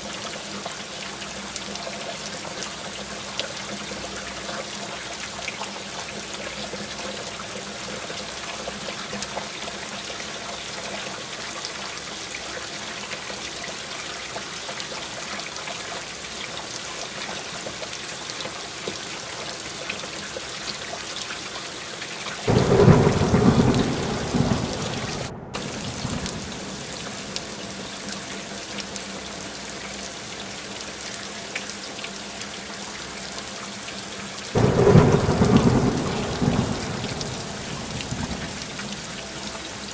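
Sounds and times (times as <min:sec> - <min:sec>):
steady rain hiss: 0:21.8 - 0:39.9
thunder clap rumbling: 0:22.5 - 0:27.4, 0:34.6 - 0:39.5.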